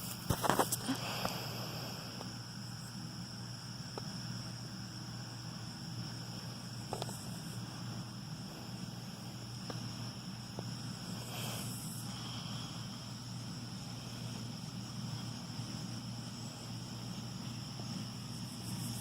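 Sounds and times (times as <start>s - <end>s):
distant tractor engine drone: 0.0s - 19.0s
insects chirring: 0.0s - 19.0s.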